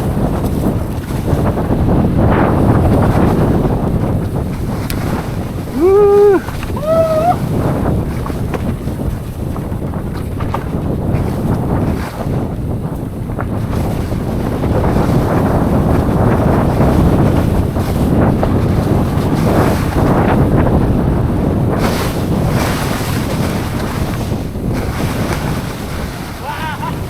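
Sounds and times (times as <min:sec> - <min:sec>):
wind buffeting microphone: 0:00.0 - 0:27.0.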